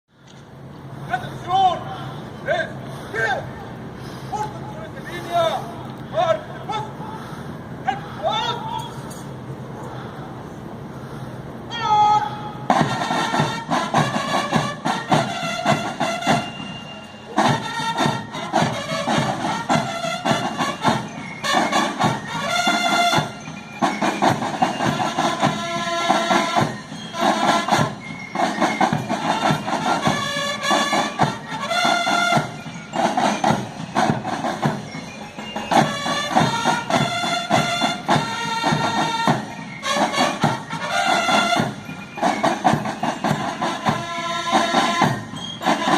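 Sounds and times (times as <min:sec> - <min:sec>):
brass horns playing: 0:12.7 - 0:23.5, 0:24.7 - 0:28.0, 0:28.6 - 0:32.6, 0:35.7 - 0:42.6, 0:43.3 - 0:45.9
marching drums beat: 0:12.7 - 0:45.9.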